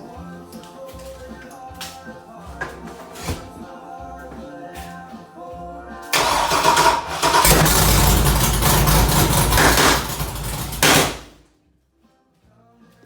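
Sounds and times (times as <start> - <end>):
engine cranking: 6.2 - 11.4
engine running rough: 6.2 - 11.4
sharp engine burst: 6.2 - 11.4.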